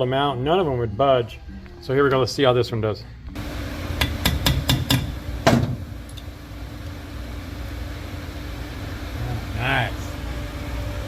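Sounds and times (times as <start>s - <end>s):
steady low hum: 2.7s - 11.0s
metal-on-metal tapping: 4.0s - 5.1s.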